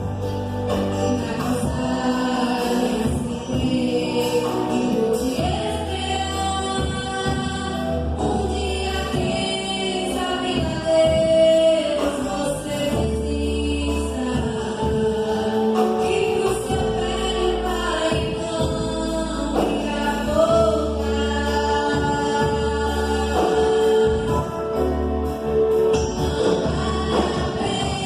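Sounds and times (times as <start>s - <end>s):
band with sustained bass: 0.0s - 28.0s
choir singing held notes: 19.5s - 28.0s.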